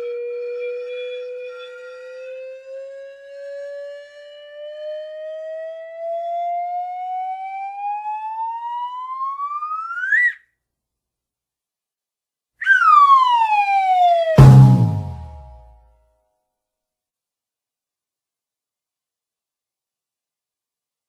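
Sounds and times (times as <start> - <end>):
falling whistle: 9.8 - 10.4, 12.6 - 15.4
rising whistle tone: 12.6 - 13.4
heavy low thump: 14.4 - 15.6.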